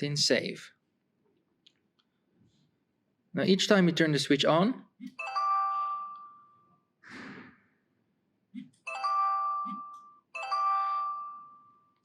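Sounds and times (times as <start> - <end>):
bell-like chime from speaker: 8.9 - 11.9.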